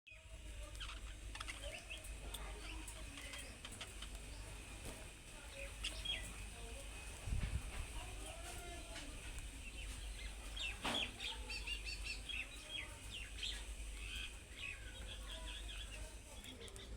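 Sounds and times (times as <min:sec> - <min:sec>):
budgerigars chirping: 0:00.6 - 0:04.6, 0:09.7 - 0:16.9.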